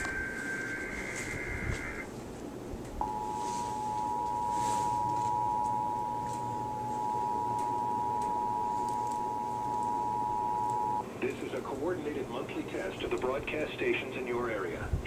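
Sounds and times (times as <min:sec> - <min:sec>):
harsh two-tone alert signal: 0:03.0 - 0:11.0.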